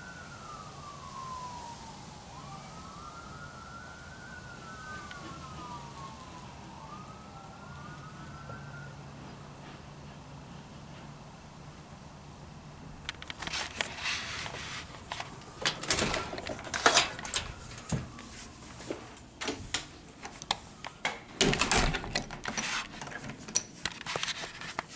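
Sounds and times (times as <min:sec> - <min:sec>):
clicks knocks and rustling: 0:13.0 - 0:24.9.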